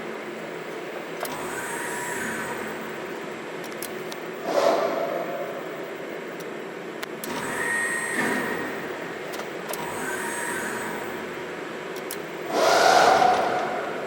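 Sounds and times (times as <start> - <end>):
press brake motor running: 7.1 - 12.6
louder motor whir: 9.7 - 11.3.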